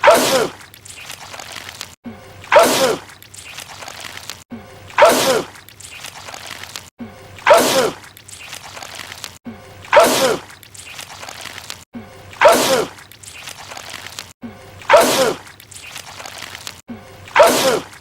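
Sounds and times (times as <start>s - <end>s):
man sneezing: 5.0s - 5.5s, 9.9s - 10.4s, 17.4s - 17.9s.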